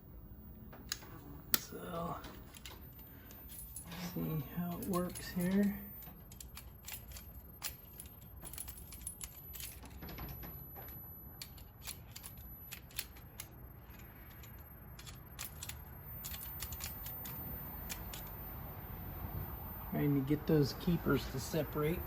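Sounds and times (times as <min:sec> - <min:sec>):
metallic clicks and scrapes: 0:02.2 - 0:18.4.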